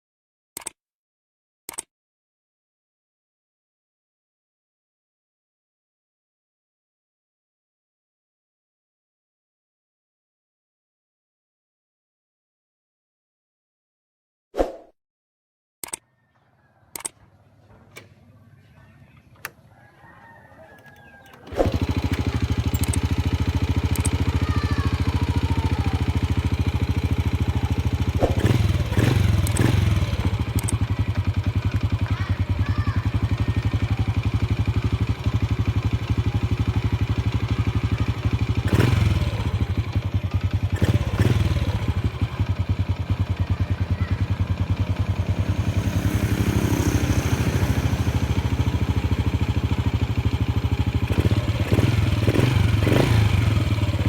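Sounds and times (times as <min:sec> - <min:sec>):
faint clicks: 0:16.9 - 0:17.2, 0:23.9 - 0:24.2
motorcycle engine idling: 0:17.2 - 0:54.0.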